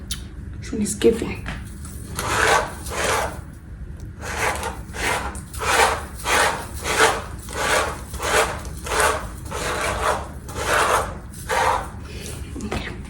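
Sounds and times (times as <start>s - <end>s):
rhythmic rubbing strokes: 1.7s - 3.5s, 4.2s - 12.6s.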